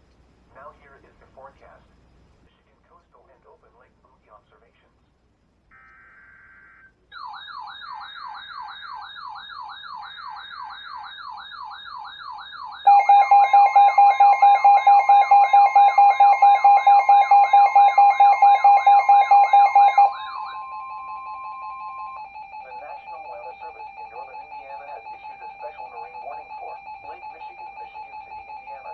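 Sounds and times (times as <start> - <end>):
warbling siren alarm: 5.7 - 28.9
rapid pulsing beep alarm: 7.1 - 28.9
steady warning tone: 7.2 - 28.9.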